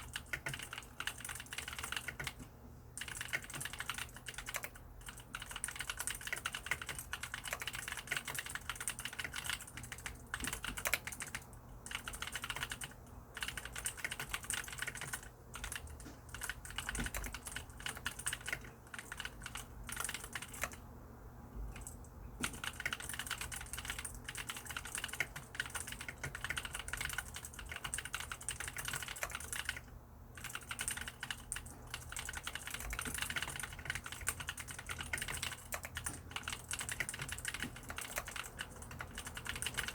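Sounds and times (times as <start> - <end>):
mechanical keyboard typing: 0.0 - 20.8, 21.7 - 39.9.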